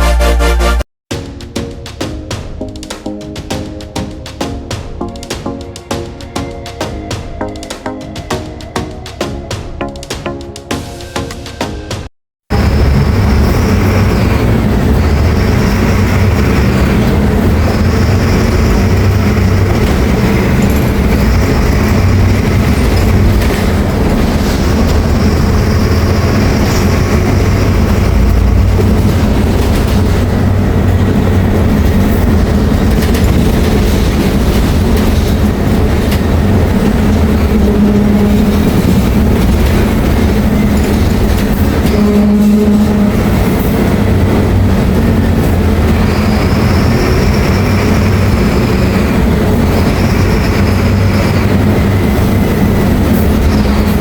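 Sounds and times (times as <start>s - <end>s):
bus diesel engine running: 12.5s - 54.0s.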